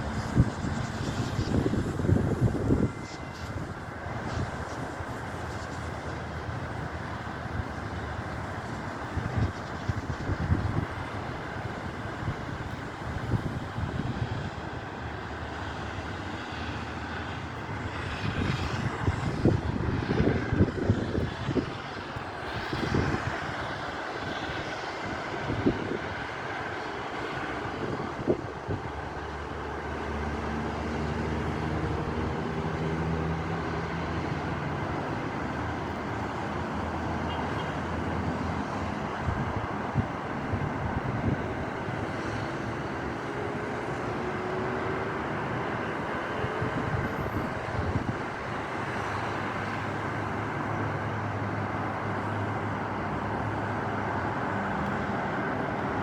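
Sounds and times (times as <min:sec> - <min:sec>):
wind buffeting microphone: 0:00.0 - 0:15.2, 0:17.7 - 0:26.7, 0:38.1 - 0:44.4, 0:45.1 - 0:51.5
road traffic: 0:00.0 - 0:56.0.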